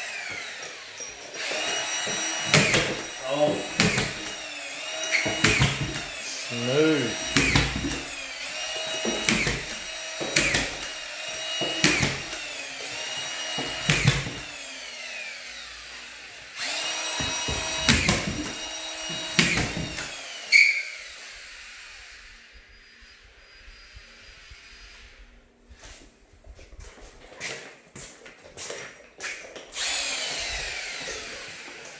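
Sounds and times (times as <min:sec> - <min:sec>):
screws driving into drywall: 0:00.0 - 0:22.1, 0:29.7 - 0:31.9
screw gun motor whine: 0:00.0 - 0:25.3, 0:29.8 - 0:31.9.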